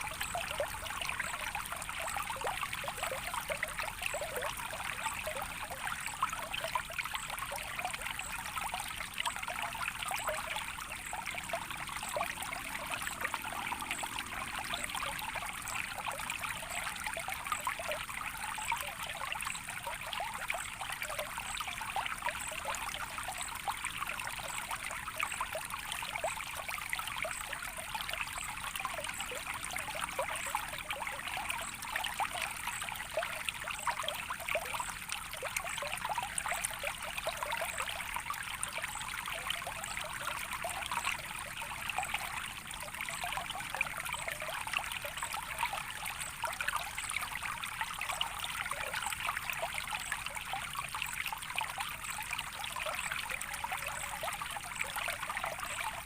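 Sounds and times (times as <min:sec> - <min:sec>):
stream trickling and babbling: 0:00.0 - 0:56.0.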